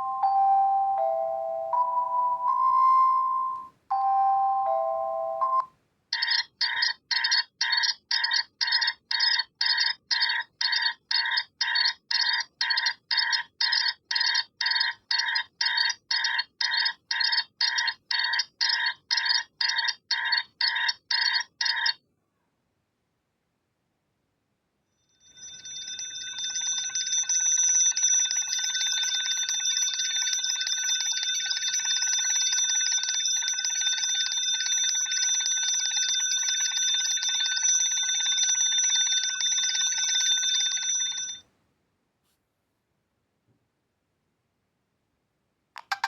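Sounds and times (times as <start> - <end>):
electronic ringtone melody: 0.0 - 22.0, 25.2 - 41.4, 45.8 - 46.0
fast repeating electronic beep: 6.2 - 22.0.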